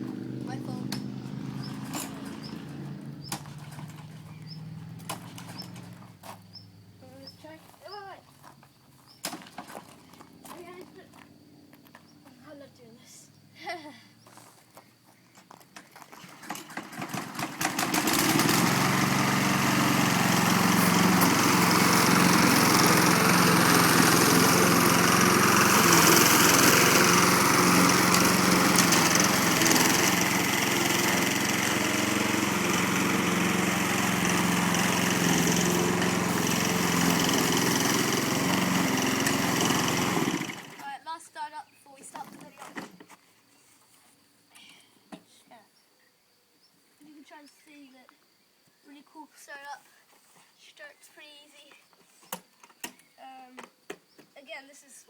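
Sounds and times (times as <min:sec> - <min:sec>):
lawn mower engine running: 0:00.0 - 0:06.3, 0:15.8 - 0:41.0.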